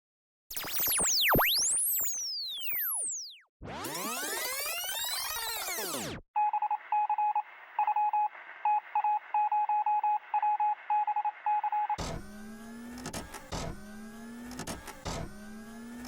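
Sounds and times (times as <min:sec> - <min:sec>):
synthesized sweep: 0:00.5 - 0:06.2, 0:12.0 - 0:16.0.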